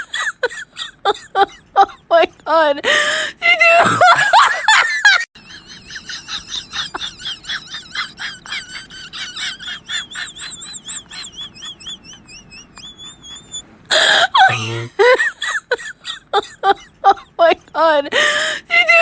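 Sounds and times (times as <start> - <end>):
squeaky laugh-like chatter: 5.7 - 15.1.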